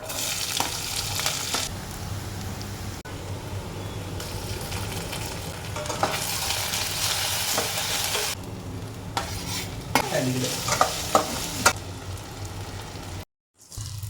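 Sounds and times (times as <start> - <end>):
food sizzling in oil: 0.0 - 14.0
spoon scraping a pan: 5.8 - 6.6, 9.2 - 11.8.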